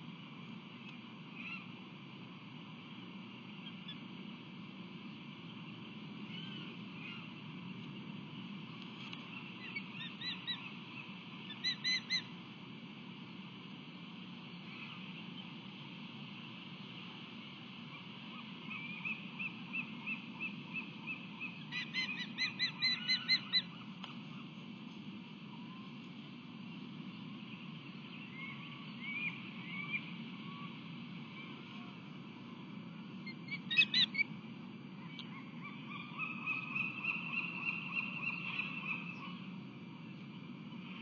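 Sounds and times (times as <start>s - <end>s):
low hum of wind: 0.0s - 41.0s
osprey whistled chirps: 18.7s - 23.7s, 33.3s - 34.3s.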